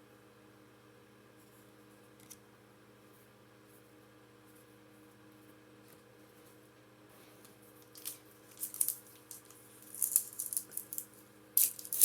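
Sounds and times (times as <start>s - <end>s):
trading cards being handled: 7.8s - 12.0s
foil wrapper crinkling: 7.9s - 12.0s.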